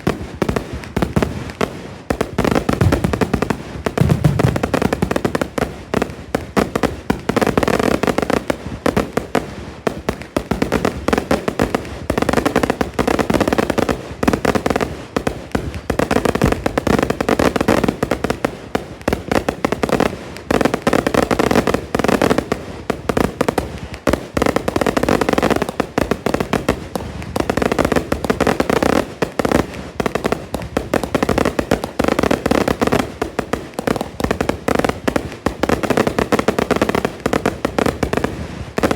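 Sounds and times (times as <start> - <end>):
fireworks bangs and crackling: 0.0 - 38.9.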